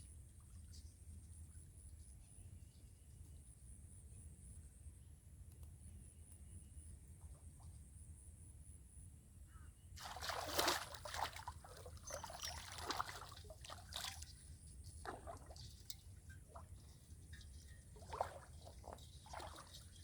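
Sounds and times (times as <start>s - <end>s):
river water splashing: 10.0s - 14.4s, 15.0s - 20.0s.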